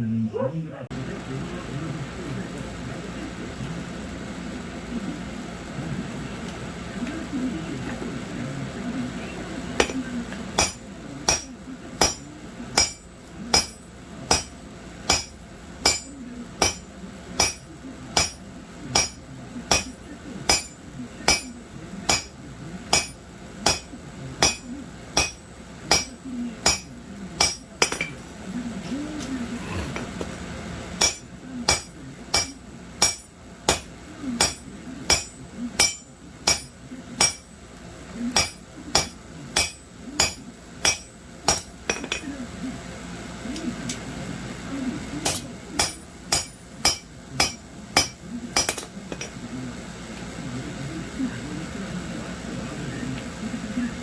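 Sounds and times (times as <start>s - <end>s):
hammer forging on anvil: 9.8s - 28.2s, 31.0s - 37.6s, 38.3s - 42.3s, 45.2s - 49.4s.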